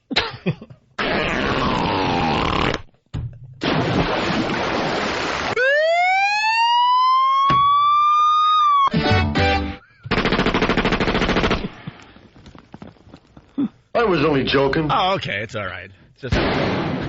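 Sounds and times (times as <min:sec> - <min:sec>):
siren-like rising tone: 0:05.6 - 0:08.9.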